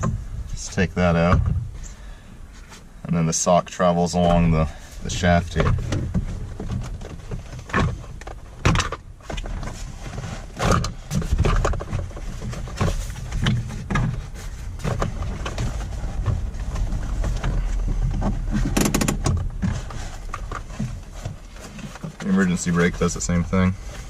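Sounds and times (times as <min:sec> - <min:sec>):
plastic trim clicking and knocking: 0:18.5 - 0:19.8.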